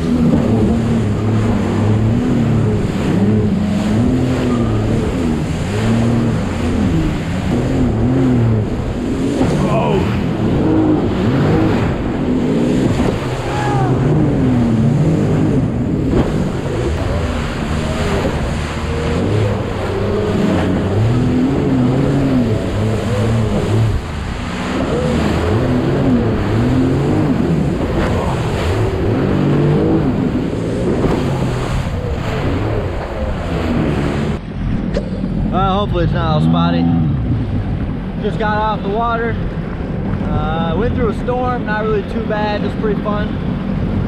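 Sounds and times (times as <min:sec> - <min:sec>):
jet ski engine running: 0:00.0 - 0:44.0
water rushing: 0:00.0 - 0:44.0
wind: 0:00.0 - 0:44.0.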